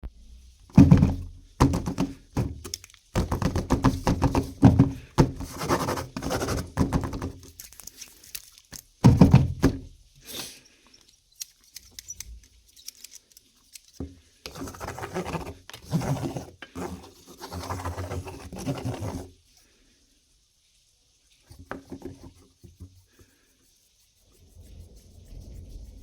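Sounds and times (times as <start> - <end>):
plastic toys knocking and rustling: 0.7 - 9.9.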